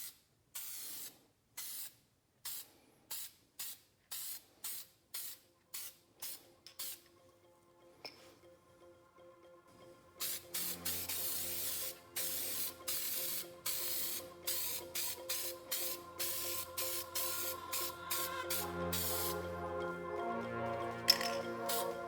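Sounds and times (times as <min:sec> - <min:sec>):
aerosol can spraying: 0:00.0 - 0:07.0, 0:10.2 - 0:19.4
background music: 0:05.2 - 0:22.0.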